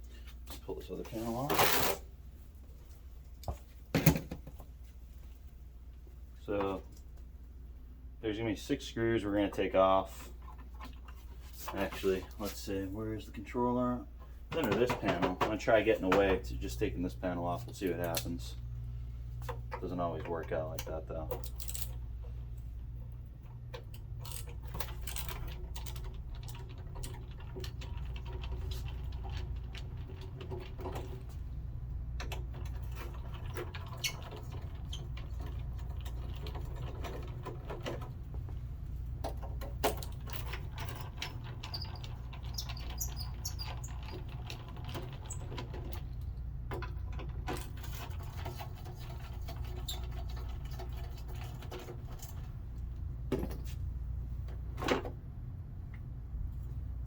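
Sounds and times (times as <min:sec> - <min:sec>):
steady low hum: 0:00.0 - 0:33.7.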